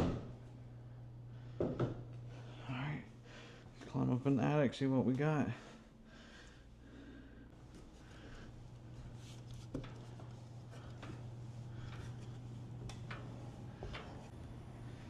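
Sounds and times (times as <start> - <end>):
air handler blower humming: 0.0 - 15.0.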